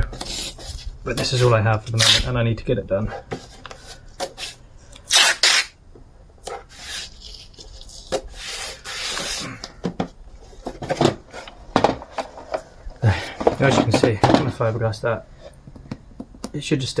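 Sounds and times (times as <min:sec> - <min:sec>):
masking tape ripping off roll: 0:00.2 - 0:02.3, 0:04.2 - 0:05.8, 0:06.7 - 0:09.6.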